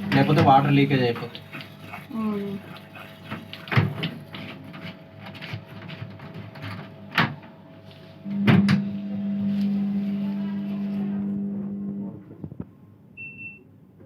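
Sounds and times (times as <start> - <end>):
steady low hum: 7.0 - 13.0.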